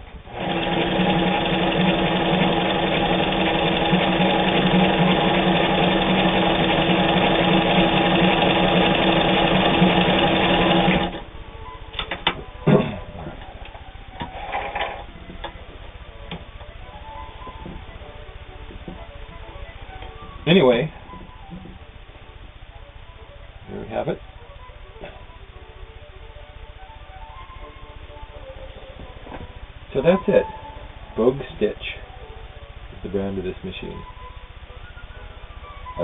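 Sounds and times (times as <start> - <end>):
sewing machine running: 0.2 - 11.3, 14.3 - 15.1.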